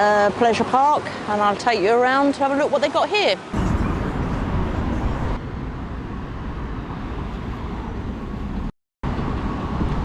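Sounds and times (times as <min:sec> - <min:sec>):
road traffic rumble: 0:03.4 - 0:10.0.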